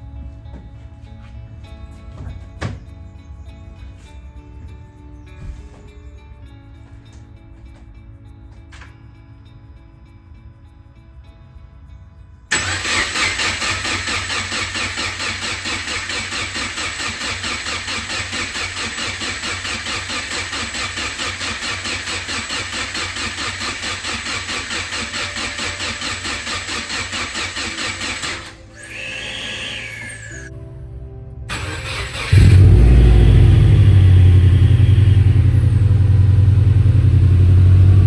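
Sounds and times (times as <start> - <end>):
engine running: 12.5 - 30.5, 31.5 - 38.0.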